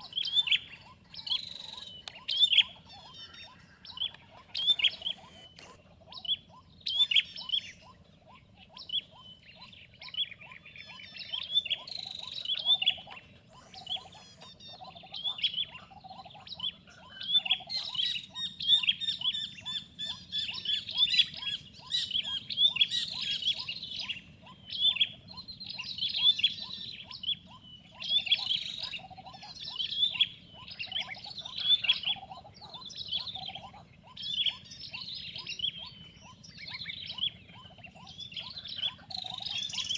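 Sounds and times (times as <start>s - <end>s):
quick series of low bird notes: 0.0s - 10.2s, 10.8s - 18.3s
birds chirping: 0.0s - 39.9s.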